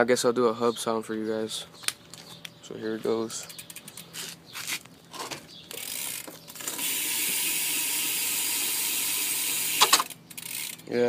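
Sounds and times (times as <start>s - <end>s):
bike hub ratcheting buzz: 5.7s - 11.0s.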